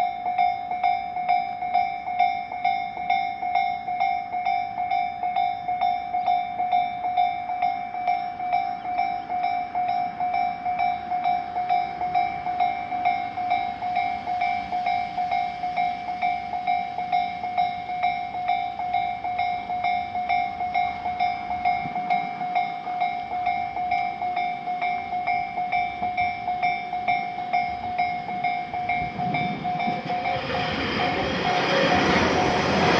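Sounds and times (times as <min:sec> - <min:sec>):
railroad crossing bell ringing: 0:00.0 - 0:32.9.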